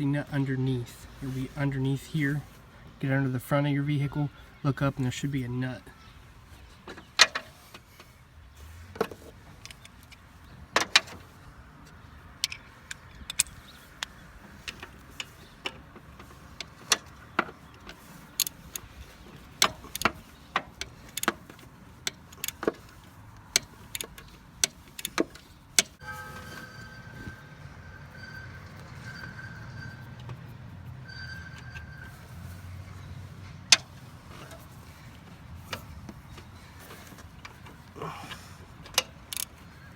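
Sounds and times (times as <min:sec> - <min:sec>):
hand tools clinking on metal: 0:12.4 - 0:39.9.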